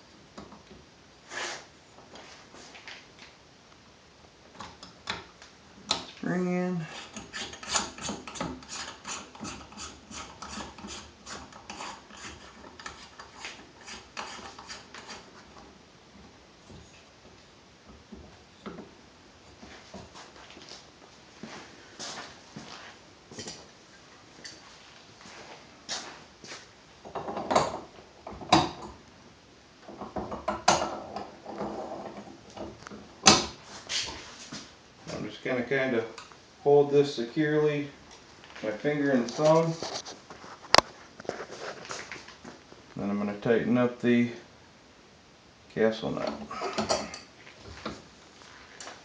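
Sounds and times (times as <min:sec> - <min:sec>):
metal threads scraping: 0:06.8 - 0:15.4.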